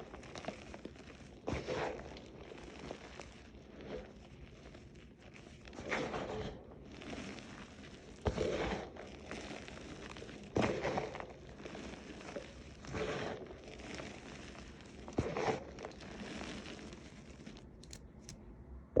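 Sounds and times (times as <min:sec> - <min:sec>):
chalk crunching and crumbling: 0:00.0 - 0:18.4.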